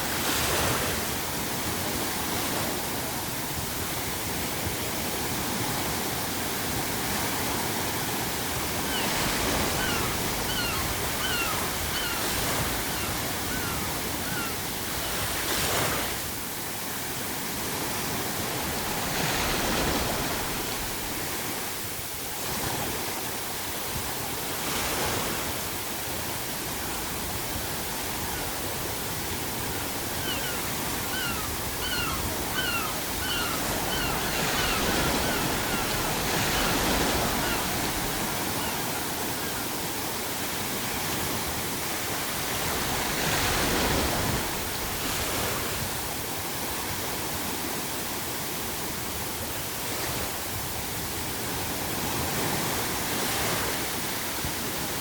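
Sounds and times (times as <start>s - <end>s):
sea waves breaking: 0.0s - 47.4s
gull calling: 8.8s - 15.3s, 30.0s - 39.8s.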